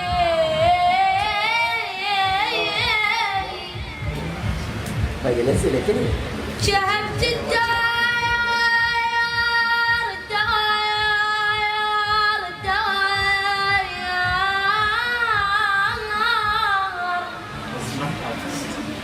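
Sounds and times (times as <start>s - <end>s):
high solo voice singing: 0.0s - 4.6s.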